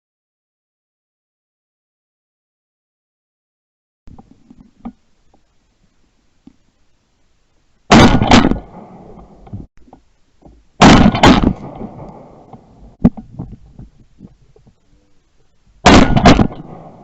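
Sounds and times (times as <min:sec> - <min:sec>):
shotgun shots with echo: 0:07.9 - 0:09.3, 0:10.8 - 0:12.5, 0:15.8 - 0:17.0.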